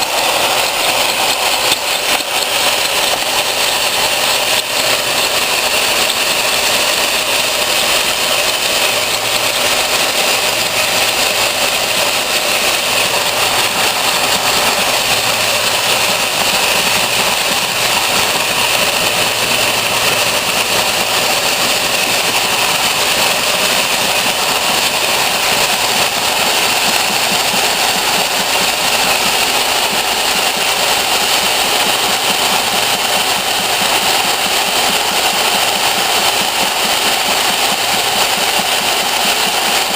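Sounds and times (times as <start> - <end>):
line-boring machine running: 0.0 - 39.9.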